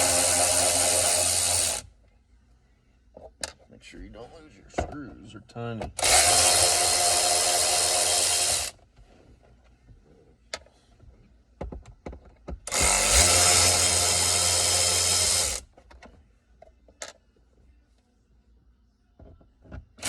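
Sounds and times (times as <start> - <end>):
cordless drill running: 0.0 - 1.8, 6.0 - 8.7, 12.7 - 15.6.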